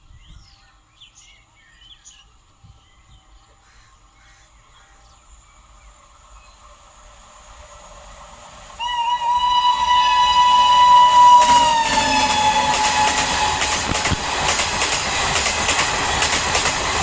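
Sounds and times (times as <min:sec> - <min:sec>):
train rumble: 0:02.7 - 0:17.0
locomotive horn blast: 0:08.8 - 0:14.1
train wheel clatter: 0:11.1 - 0:17.0.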